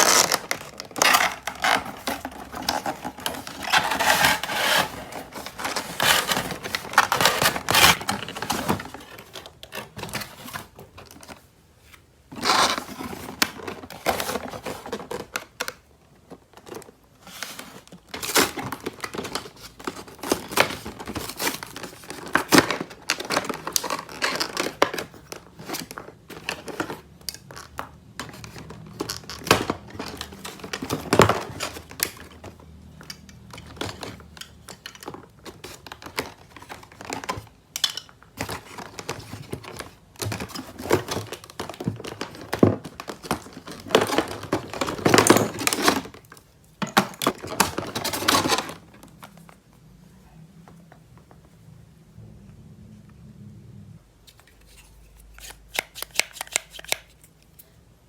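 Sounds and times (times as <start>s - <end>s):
packaging crinkling and tearing: 0.0s - 11.4s.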